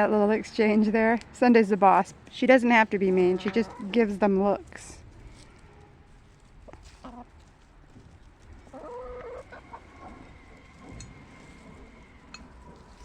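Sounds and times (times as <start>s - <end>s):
hens clucking softly: 6.7s - 7.4s, 8.6s - 11.0s.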